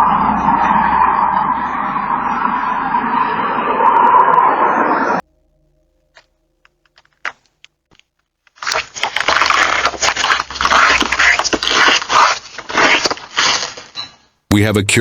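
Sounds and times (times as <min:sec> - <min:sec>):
low rumble: 0:00.0 - 0:08.4
rough scraping and rustling: 0:08.4 - 0:14.0.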